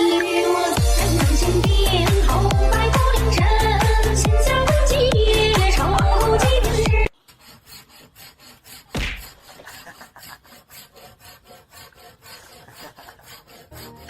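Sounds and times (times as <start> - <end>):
scratching strokes: 0.6 - 14.0.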